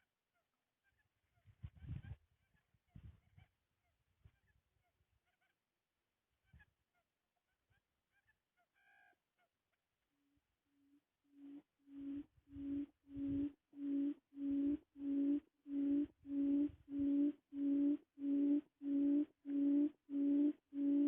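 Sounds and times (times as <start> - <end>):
low electronic beeping: 11.4 - 21.0.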